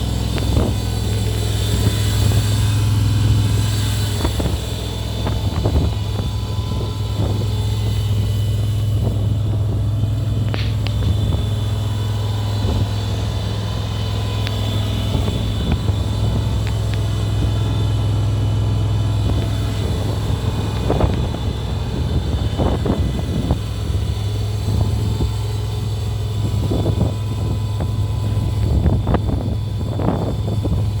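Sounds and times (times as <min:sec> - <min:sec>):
loader engine humming: 0:00.0 - 0:31.0.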